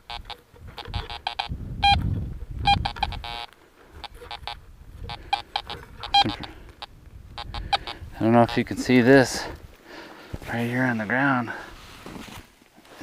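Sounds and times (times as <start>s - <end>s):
metal detector beeps: 0.0s - 2.0s, 2.6s - 8.7s
low rustle: 8.6s - 13.0s.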